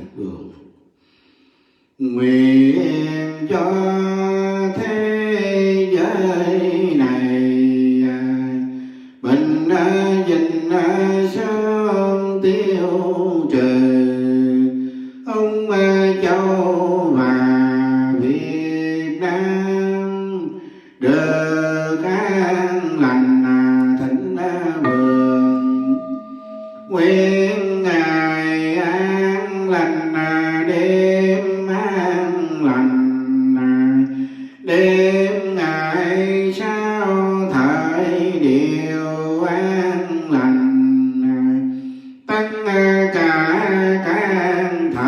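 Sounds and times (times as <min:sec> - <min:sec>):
man chanting prayer: 0:00.0 - 0:00.6, 0:02.0 - 0:45.0
chanting in long held notes: 0:24.8 - 0:28.0.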